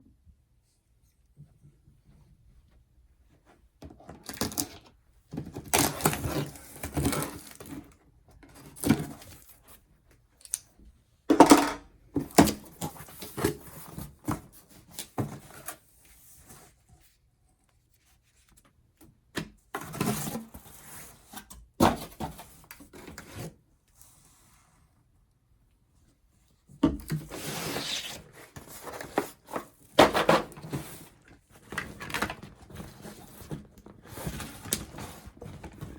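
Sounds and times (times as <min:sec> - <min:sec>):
packaging rustling and scraping: 0:05.4 - 0:09.8, 0:27.1 - 0:35.9.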